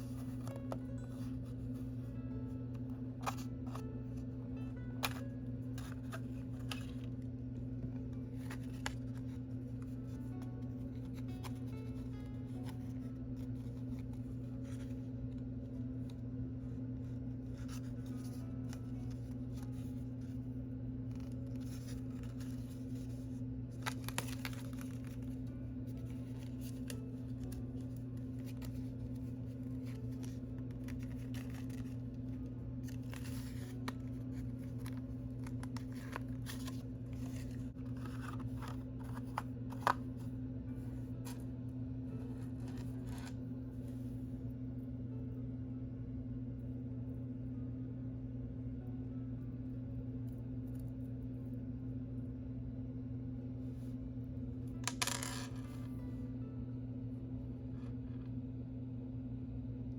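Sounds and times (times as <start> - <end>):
low electrical hum: 0.0 - 59.9
packaging rustling: 21.2 - 40.0.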